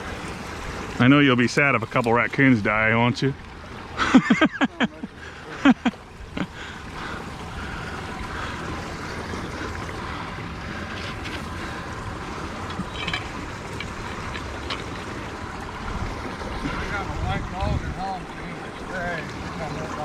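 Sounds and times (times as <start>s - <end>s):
water rushing from pipe: 0.0s - 20.0s
man's voice or laughter: 4.0s - 6.6s.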